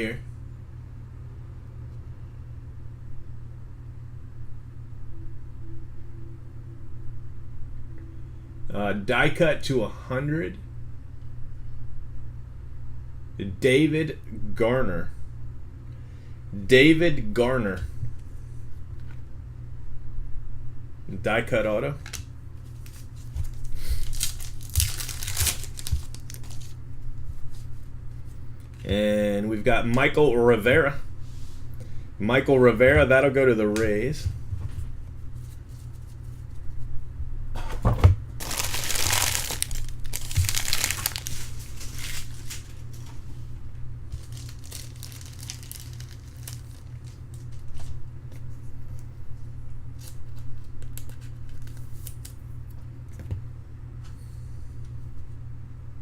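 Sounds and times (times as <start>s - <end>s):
card pack wrapper crinkling and tearing: 22.8s - 26.8s, 38.4s - 43.1s, 44.1s - 47.7s, 50.0s - 52.4s.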